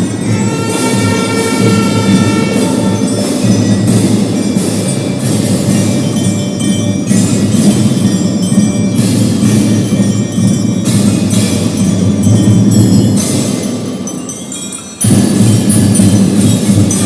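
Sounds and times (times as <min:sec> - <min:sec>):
cymbal crashes: 0:00.0 - 0:14.2
drums playing: 0:00.0 - 0:14.3, 0:15.0 - 0:17.0
bell-lyra melody: 0:00.0 - 0:17.0
brass-like sustained tones: 0:00.2 - 0:03.5.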